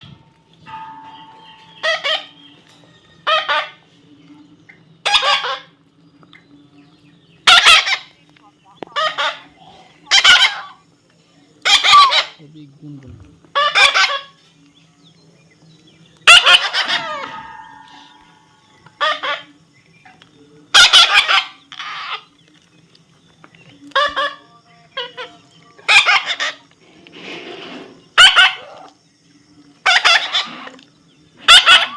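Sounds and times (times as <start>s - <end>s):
parrot squawking: 1.8s - 2.4s, 3.2s - 3.8s, 5.0s - 5.7s, 7.4s - 8.2s, 8.8s - 10.8s, 11.6s - 12.4s, 13.5s - 14.4s, 16.2s - 19.5s, 20.7s - 22.3s, 23.9s - 26.6s, 28.2s - 28.9s, 29.8s - 30.8s, 31.4s - 31.9s.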